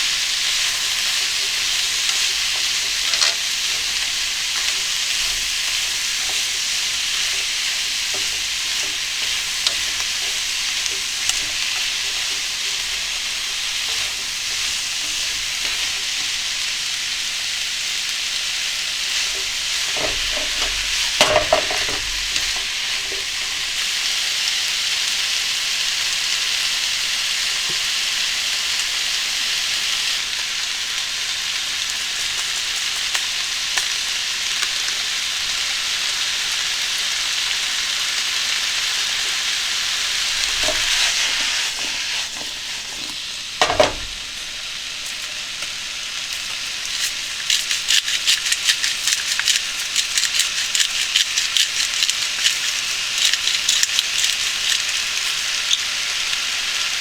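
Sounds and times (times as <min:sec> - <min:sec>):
food sizzling in a pan: 0:00.0 - 0:57.0
clattering: 0:01.4 - 0:04.0, 0:19.3 - 0:23.3
utensil clicks: 0:47.5 - 0:55.8.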